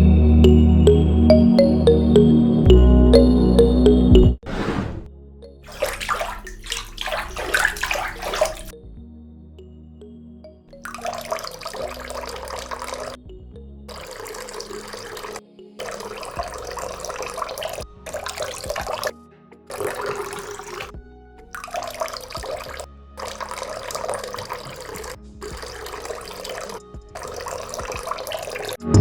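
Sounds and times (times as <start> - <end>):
faint background music: 5.1 - 29.0
water running and splashing: 5.6 - 8.7, 10.8 - 13.2, 13.9 - 19.1, 19.7 - 28.8.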